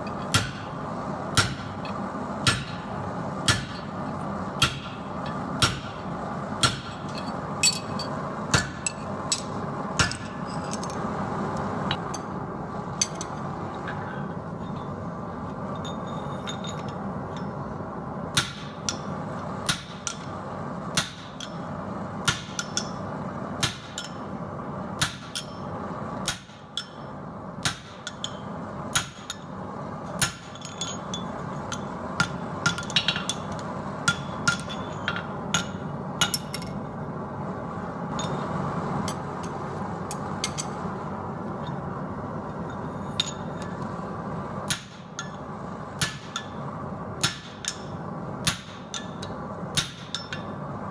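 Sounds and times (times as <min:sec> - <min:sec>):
hammer striking steel on anvil: 0:00.0 - 0:04.0, 0:04.6 - 0:06.0, 0:06.6 - 0:11.0, 0:18.3 - 0:20.3, 0:20.9 - 0:21.6, 0:22.2 - 0:23.0, 0:23.6 - 0:24.2, 0:25.0 - 0:29.6, 0:30.2 - 0:36.8, 0:43.1 - 0:43.8, 0:44.7 - 0:45.4, 0:46.0 - 0:46.6, 0:47.2 - 0:50.6.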